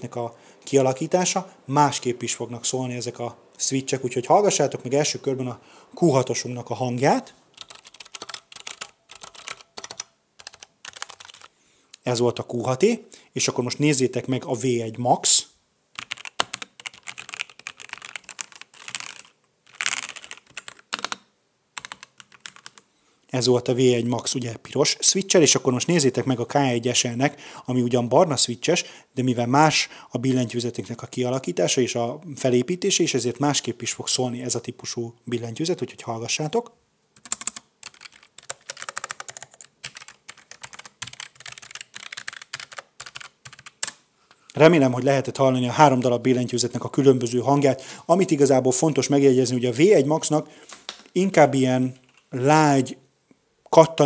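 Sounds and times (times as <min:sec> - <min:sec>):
mechanical keyboard typing: 0:07.6 - 0:11.5, 0:16.0 - 0:21.2, 0:21.8 - 0:22.8, 0:37.2 - 0:44.0.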